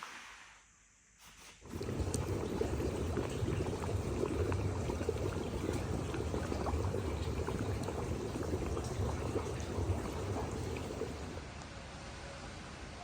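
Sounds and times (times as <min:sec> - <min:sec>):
hot spring water bubbling: 0:01.6 - 0:11.5.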